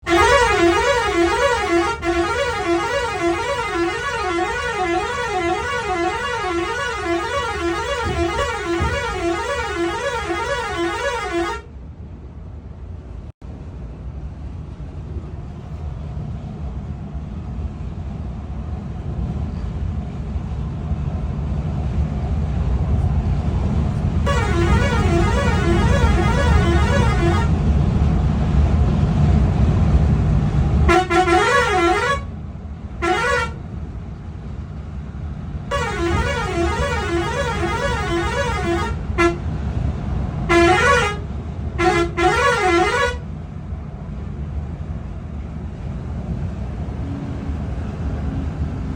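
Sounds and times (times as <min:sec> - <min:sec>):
bus horn warbling tone: 0:00.0 - 0:11.7, 0:24.3 - 0:27.6, 0:30.9 - 0:32.3, 0:33.0 - 0:33.6, 0:35.7 - 0:39.6, 0:40.4 - 0:43.3
low engine rumble: 0:00.0 - 0:48.9.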